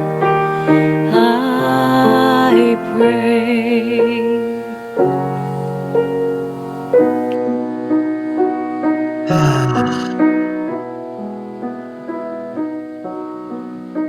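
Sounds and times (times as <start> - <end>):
slow piano music: 0.0 - 14.0
breathy falling noise: 9.3 - 10.4.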